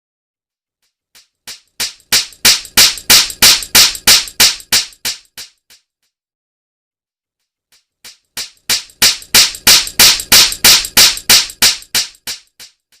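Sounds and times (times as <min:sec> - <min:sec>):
sharp slapping smacks: 0:01.5 - 0:05.5, 0:08.4 - 0:12.7.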